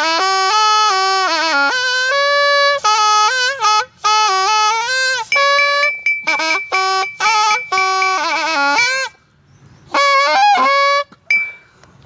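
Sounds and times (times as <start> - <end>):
reed oboe playing: 0.0 - 11.8.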